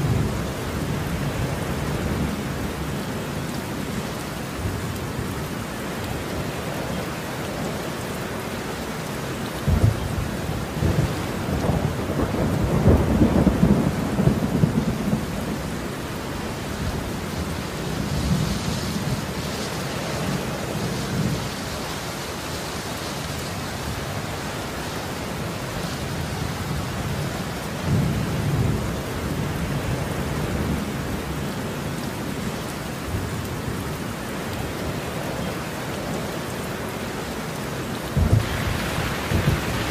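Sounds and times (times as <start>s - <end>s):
heavy rain: 0.0s - 39.9s
thunder rumbling: 9.6s - 21.6s, 38.1s - 39.9s.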